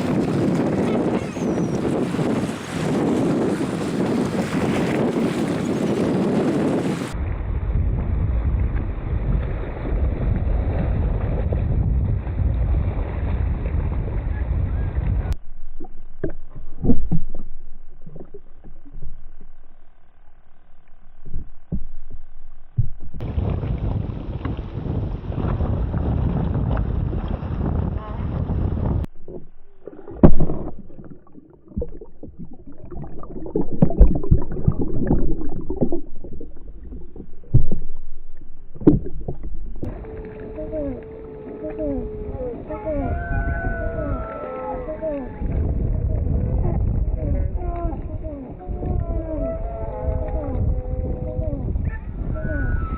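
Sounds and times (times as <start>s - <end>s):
rushing water: 0.0s - 7.2s, 15.7s - 19.8s, 29.0s - 43.1s
wind buffeting microphone: 0.0s - 19.5s, 21.2s - 52.9s
muffled water gurgling and splashing: 0.0s - 52.9s
muffled knocks and thumps: 16.2s - 19.2s, 29.2s - 39.9s.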